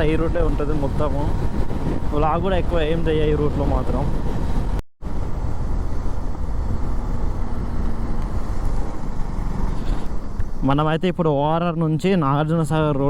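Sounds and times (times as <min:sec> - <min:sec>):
wind rushing over microphone: 0:00.0 - 0:13.0
motorcycle engine: 0:04.1 - 0:10.7.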